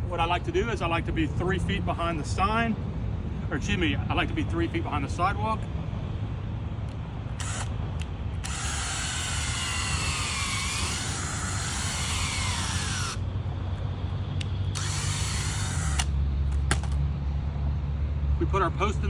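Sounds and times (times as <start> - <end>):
steady low hum: 0.0 - 19.0
power tool motor whining: 7.4 - 13.2, 14.6 - 17.0.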